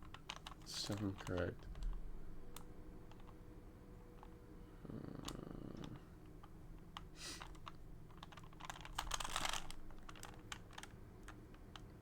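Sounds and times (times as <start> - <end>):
plastic puzzle cube clicks: 7.0 - 11.9.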